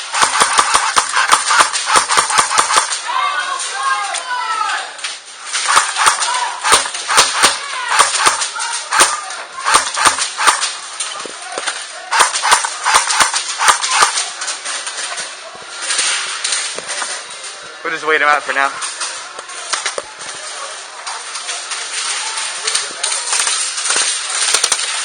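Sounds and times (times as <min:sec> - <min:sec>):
airsoft guns firing: 0:00.0 - 0:03.1, 0:05.5 - 0:10.9, 0:12.1 - 0:14.4, 0:23.3 - 0:25.0.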